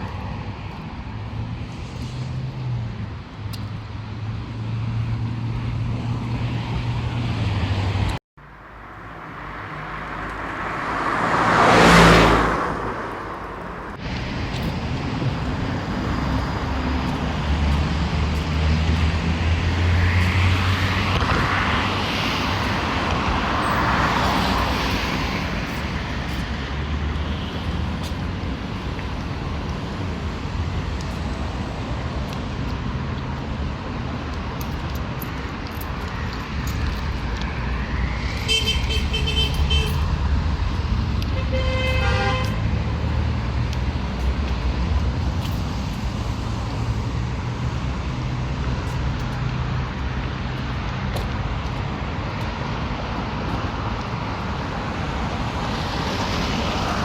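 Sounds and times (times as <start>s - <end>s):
road traffic hum: 0.0s - 57.0s
car passing close: 8.8s - 28.7s.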